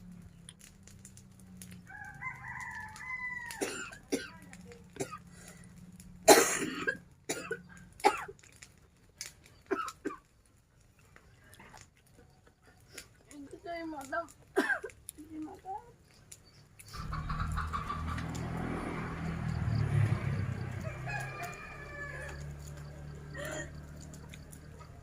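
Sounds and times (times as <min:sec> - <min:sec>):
rooster crowing: 0:01.8 - 0:03.7, 0:17.0 - 0:24.1
person coughing harshly: 0:06.3 - 0:08.3, 0:14.6 - 0:14.9.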